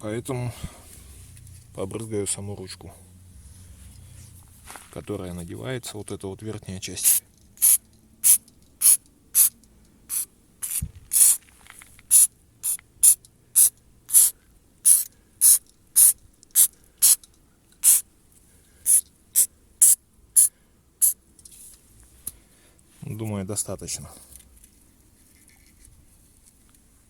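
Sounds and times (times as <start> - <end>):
aerosol spray hissing in bursts: 7.0 - 9.5, 10.1 - 11.4, 12.1 - 17.2, 17.8 - 18.0, 18.8 - 21.2.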